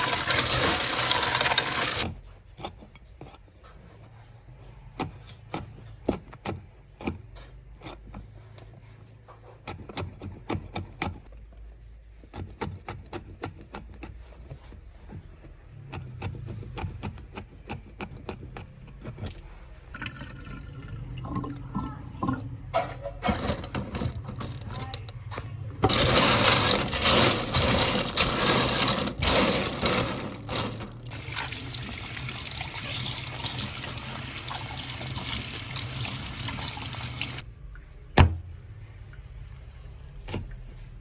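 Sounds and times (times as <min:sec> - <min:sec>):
scraping: 0:22.7 - 0:31.2
shells clicking and clattering: 0:25.8 - 0:31.1
water sounds: 0:30.6 - 0:37.4.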